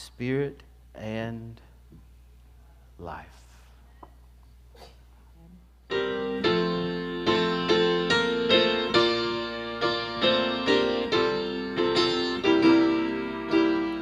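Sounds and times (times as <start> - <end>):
piano playing slow block chords: 5.8 - 14.0.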